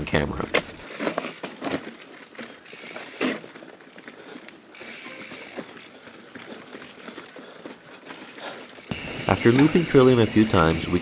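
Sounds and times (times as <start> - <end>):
bike wheels knocking over rocks: 0.6 - 4.1
bicycle hub ratcheting clicks: 4.8 - 5.8, 8.7 - 11.0.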